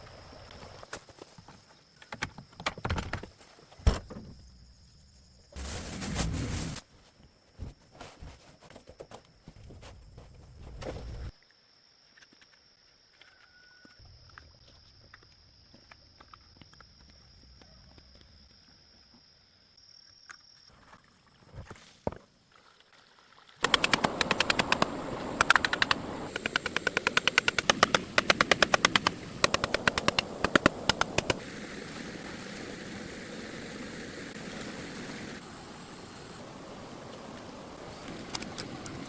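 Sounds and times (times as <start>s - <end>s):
steady hiss: 23.6s - 39.0s.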